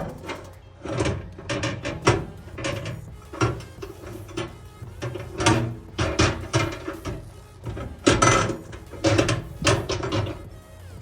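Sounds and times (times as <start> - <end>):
microwave turntable tray clatter: 0.0 - 10.5.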